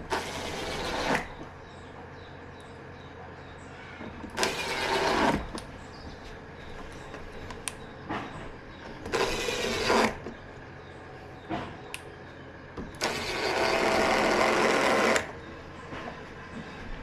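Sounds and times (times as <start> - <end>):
electric screwdriver driving screws: 0.0 - 1.4, 4.3 - 5.6, 9.1 - 10.3, 13.0 - 15.4.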